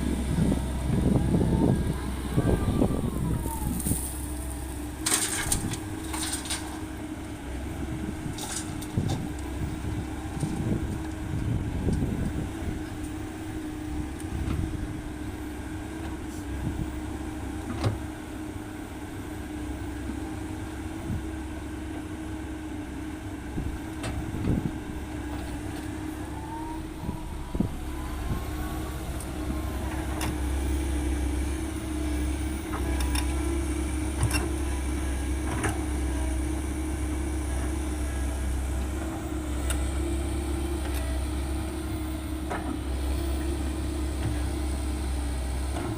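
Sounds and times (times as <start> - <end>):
hydraulic whine: 0.0 - 5.7, 25.3 - 33.2
excavator diesel engine running: 0.0 - 45.9.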